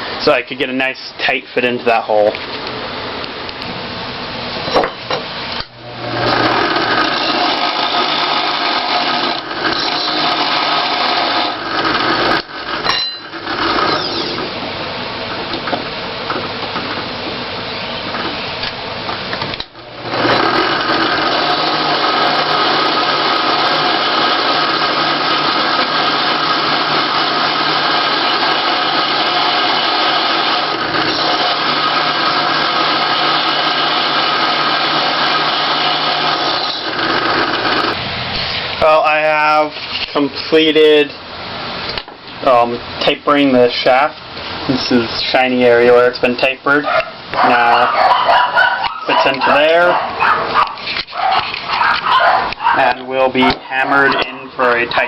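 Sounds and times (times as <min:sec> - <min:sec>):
drill press grinding metal rod: 0:05.8 - 0:14.6, 0:19.5 - 0:38.0, 0:49.0 - 0:49.9.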